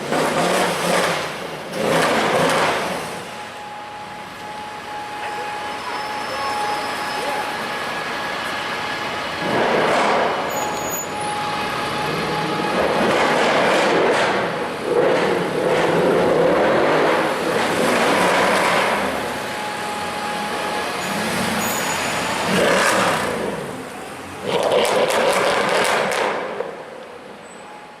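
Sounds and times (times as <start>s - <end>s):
car engine revving: 0.0s - 3.2s, 9.4s - 10.6s, 21.0s - 26.8s
street traffic noise: 0.0s - 28.0s.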